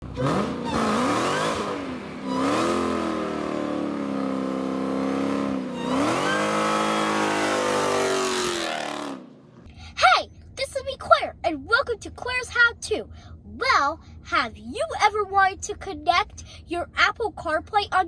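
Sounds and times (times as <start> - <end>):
car engine accelerating hard: 0.0 - 9.6.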